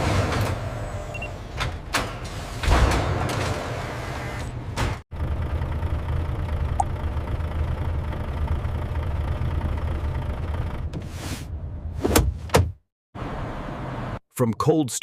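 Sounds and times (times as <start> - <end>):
truck engine idling: 5.2 - 10.9.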